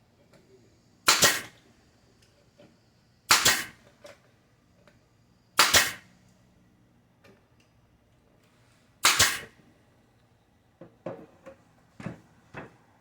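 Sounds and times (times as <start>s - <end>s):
nails hammered into wood: 1.1s - 1.5s, 3.3s - 3.8s, 5.6s - 6.0s, 9.0s - 9.5s.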